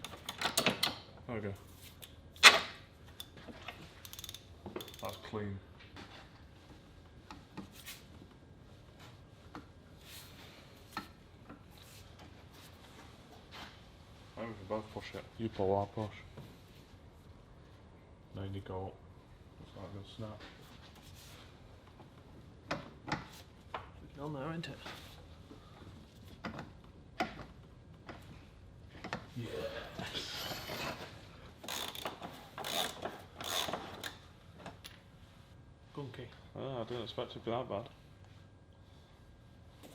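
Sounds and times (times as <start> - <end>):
tools clicking and tapping: 4.0 - 5.3.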